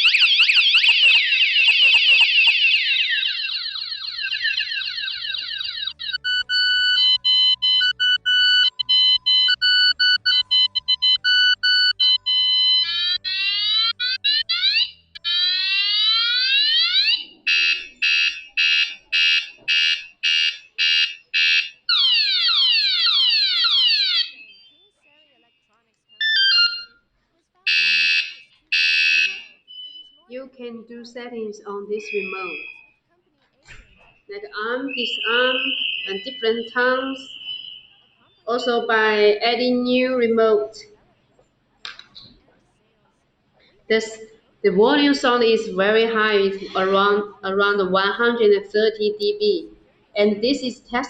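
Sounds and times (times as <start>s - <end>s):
alarm siren cycling tones: 0.0s - 24.8s, 26.2s - 27.0s, 27.7s - 30.1s, 32.0s - 32.9s, 34.5s - 39.4s.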